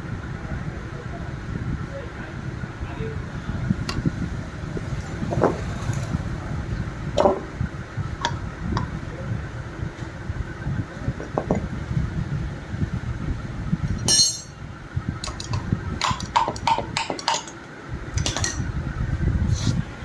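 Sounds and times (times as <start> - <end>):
scooter engine rumbling: 0.0 - 20.0
sharp metallic clinks: 14.0 - 14.6.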